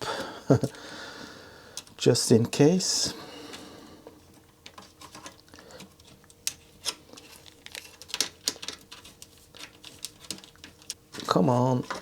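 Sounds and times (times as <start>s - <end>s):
tool clicking and scraping on chips: 4.6s - 12.0s.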